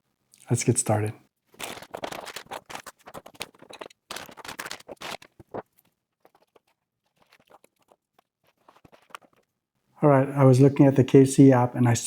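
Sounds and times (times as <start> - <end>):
packaging rustling and crinkling: 1.4 - 9.6.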